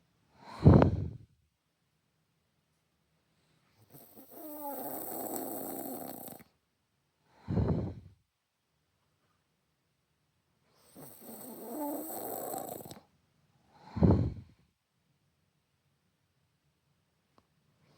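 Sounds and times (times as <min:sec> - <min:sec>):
woman snoring: 0:04.0 - 0:06.5, 0:10.9 - 0:13.0, 0:13.8 - 0:14.5.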